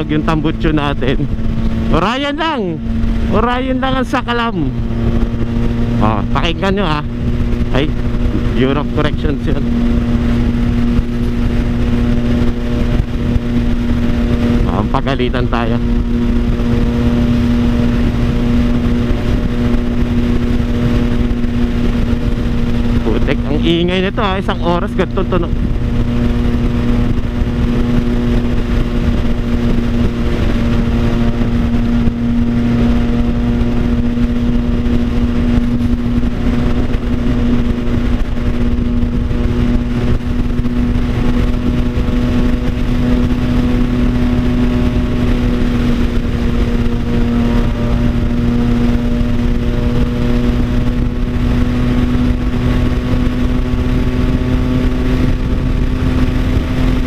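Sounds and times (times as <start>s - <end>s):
motorcycle engine loud drone: 0.0s - 57.0s.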